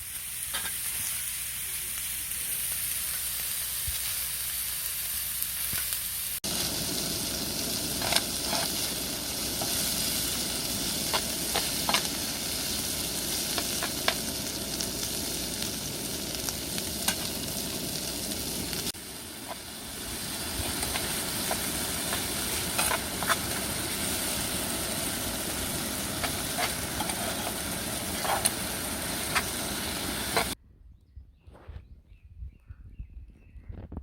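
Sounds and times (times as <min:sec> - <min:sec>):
food sizzling in a pan: 0:00.0 - 0:30.6
sharp pops and crackles: 0:16.5 - 0:17.4, 0:18.8 - 0:25.3.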